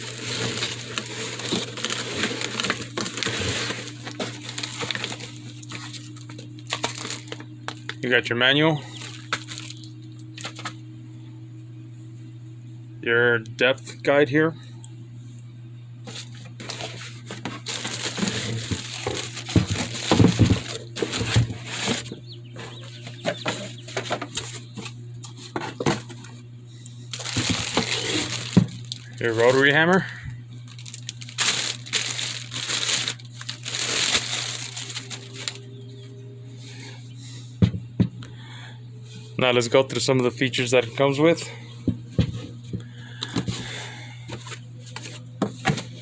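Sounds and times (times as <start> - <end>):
packaging crinkling and rustling: 0.0 - 8.0, 8.9 - 10.8, 16.1 - 26.3, 27.1 - 29.7, 30.6 - 35.8.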